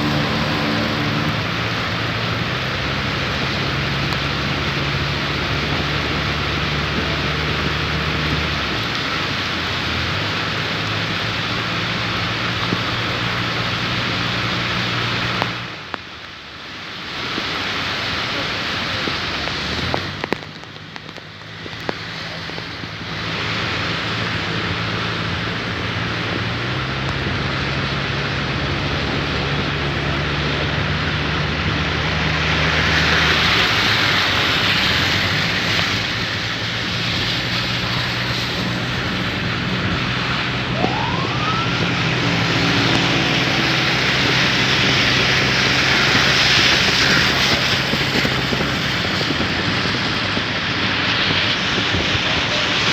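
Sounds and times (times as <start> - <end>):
engine humming low: 0.0 - 52.9
steady rain: 0.0 - 52.9
short rising tone: 38.3 - 47.9.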